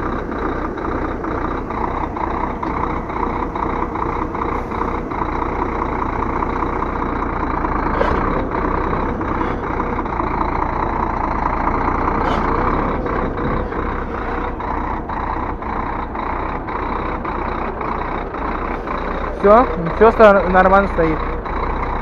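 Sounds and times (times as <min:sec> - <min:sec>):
diesel truck engine running: 0:00.0 - 0:22.0.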